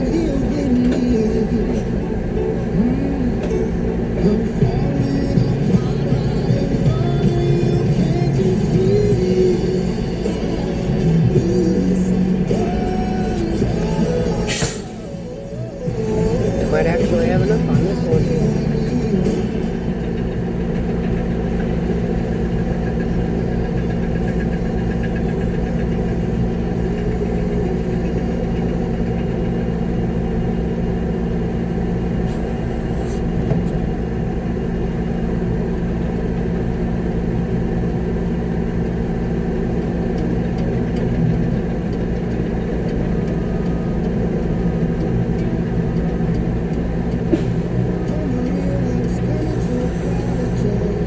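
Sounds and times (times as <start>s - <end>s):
truck diesel engine from cab: 0.0s - 51.0s.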